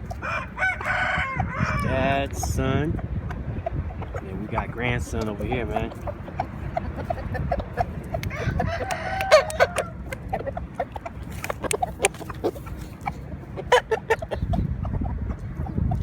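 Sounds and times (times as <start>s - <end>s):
birds clucking: 0.0s - 16.0s
rooster crowing: 0.1s - 1.9s, 8.2s - 10.2s.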